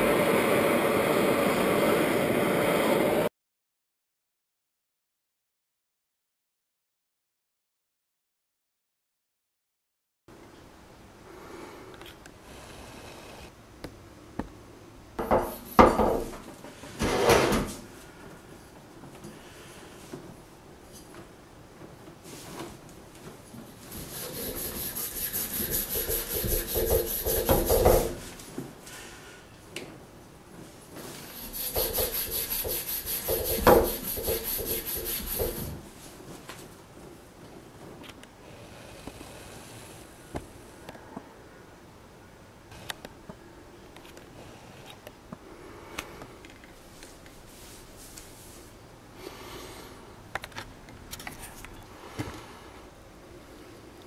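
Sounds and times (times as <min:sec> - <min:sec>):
rubbing strokes: 0:23.7 - 0:28.4, 0:31.0 - 0:36.2.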